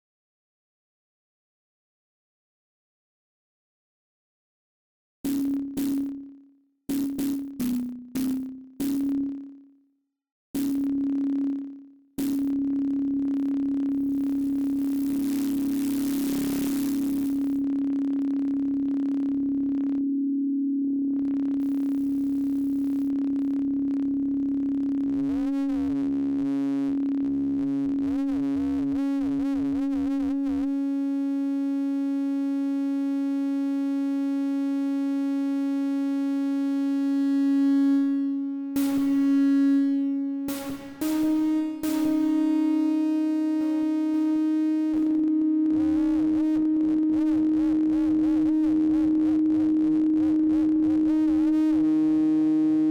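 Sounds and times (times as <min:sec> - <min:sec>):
low synthesizer drone: 0:05.3 - 0:09.7, 0:10.6 - 0:31.9, 0:36.4 - 0:52.9.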